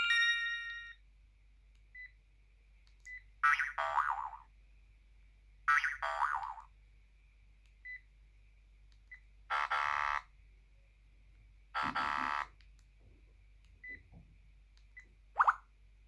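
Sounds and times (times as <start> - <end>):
phone ringtone sound effect: 0.0 - 1.0.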